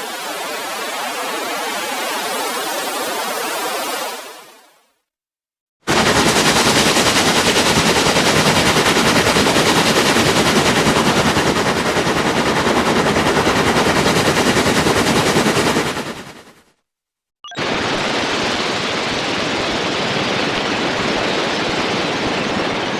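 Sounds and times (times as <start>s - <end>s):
machine-gun-like rapid rattle: 5.9s - 16.6s.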